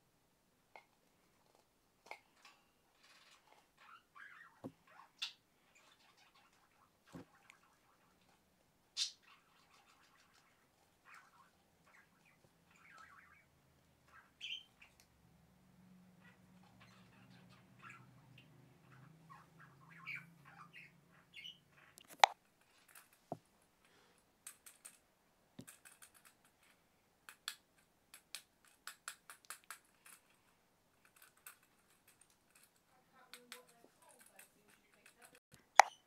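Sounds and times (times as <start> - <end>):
plastic clicks and taps: 22.0 - 22.4.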